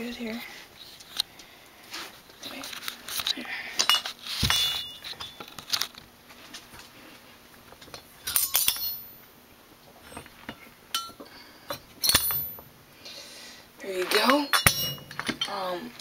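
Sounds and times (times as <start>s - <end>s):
metallic clinks and clicks: 8.3s - 9.2s.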